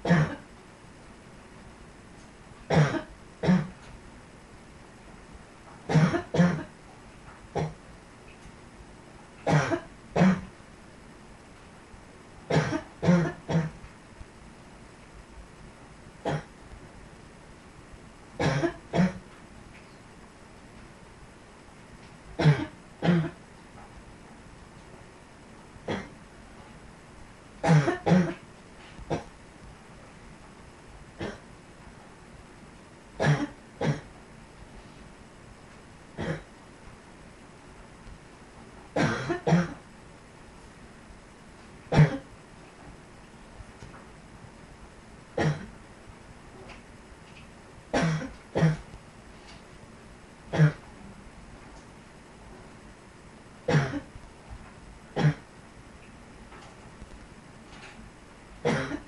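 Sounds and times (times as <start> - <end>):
person coughing: 0.0 - 0.4, 2.7 - 3.8, 5.9 - 6.7, 9.5 - 10.5, 12.5 - 13.8, 16.3 - 16.5, 18.4 - 19.2, 22.4 - 23.4, 27.6 - 28.4, 33.2 - 34.1, 36.2 - 36.5, 39.0 - 39.8, 41.9 - 42.3, 45.4 - 45.7, 48.0 - 48.8, 50.5 - 50.8, 53.7 - 54.1, 55.2 - 55.4, 58.6 - 59.0.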